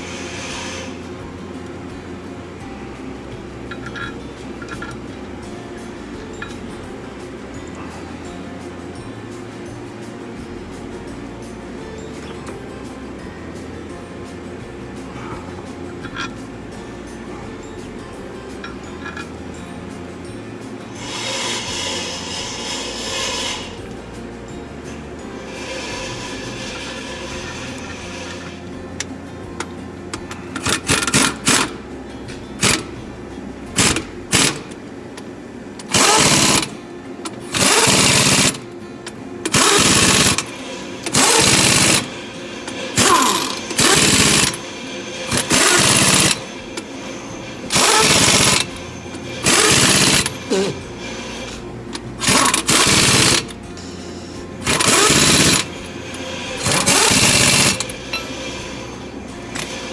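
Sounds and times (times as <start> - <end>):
pneumatic wrench bursts: 0.0 - 1.3, 20.9 - 24.0, 25.3 - 28.8, 30.1 - 31.8, 32.6 - 33.0, 33.8 - 34.8, 35.8 - 36.8, 37.4 - 38.7, 39.4 - 59.9.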